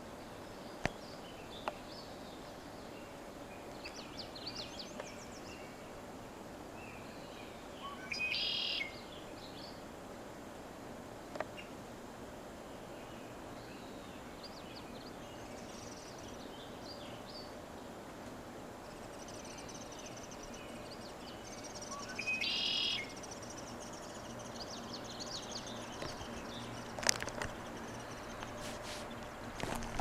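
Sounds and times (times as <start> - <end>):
small birds chirping: 0.0 - 6.1, 6.7 - 9.8, 12.7 - 17.9, 18.8 - 30.0
outdoor background hiss: 0.0 - 30.0
buzzy bird call: 21.7 - 24.1.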